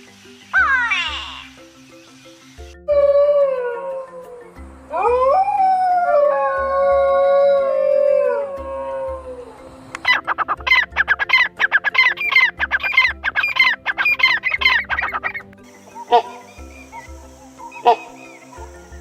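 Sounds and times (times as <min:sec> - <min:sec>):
background music with low beat: 0:00.0 - 0:19.0
canine howling: 0:02.9 - 0:09.7
short bird calls: 0:10.0 - 0:18.7.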